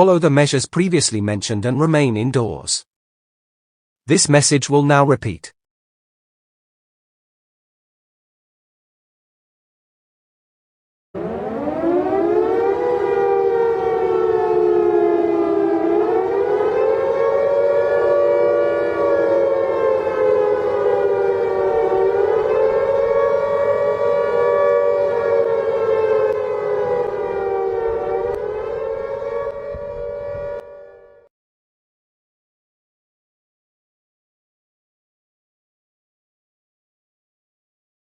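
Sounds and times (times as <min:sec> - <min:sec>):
civil defence siren wailing: 0:11.2 - 0:31.3.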